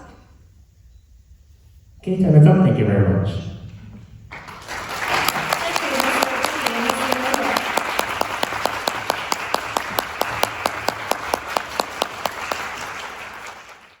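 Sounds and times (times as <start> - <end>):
audience applauding: 4.3 - 14.0
nearby person clapping: 4.3 - 14.0.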